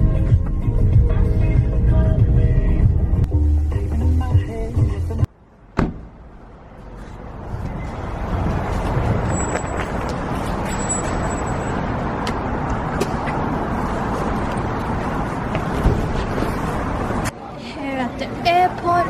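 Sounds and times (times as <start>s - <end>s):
car road and engine noise: 0.0s - 17.5s.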